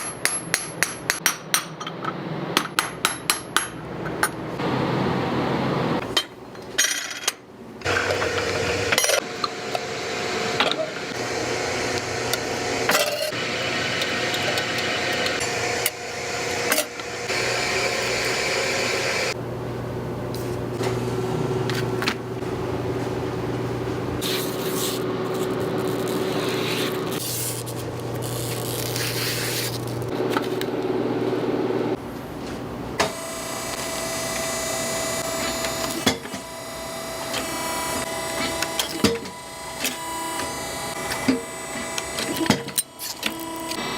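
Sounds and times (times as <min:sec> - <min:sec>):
buzzing motor: 0:07.8 - 0:19.4
machine hum: 0:07.8 - 0:43.9.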